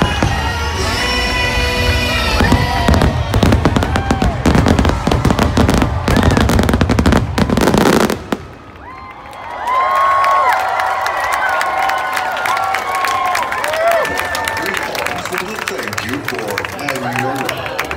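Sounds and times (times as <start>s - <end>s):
show music: 0.0s - 3.8s
fireworks bangs and crackles: 0.0s - 8.8s.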